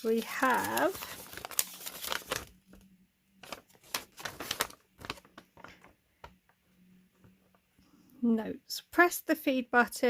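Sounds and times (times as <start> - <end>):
paper rustling and crackling: 0.0 - 6.4.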